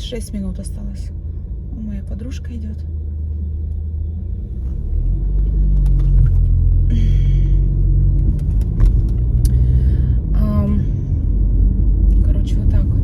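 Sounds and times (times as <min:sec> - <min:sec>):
low car rumble: 0:00.0 - 0:13.0.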